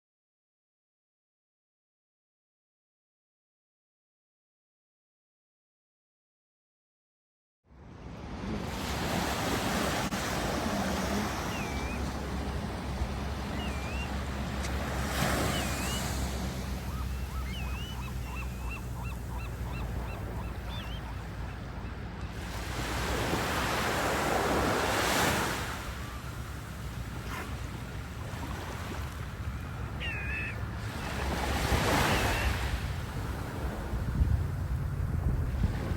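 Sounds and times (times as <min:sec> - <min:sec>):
ocean surf breaking: 0:08.0 - 0:35.9
bird chirping: 0:13.4 - 0:14.2, 0:16.8 - 0:21.9, 0:30.0 - 0:30.6
wind rumbling on microphone: 0:32.4 - 0:35.9.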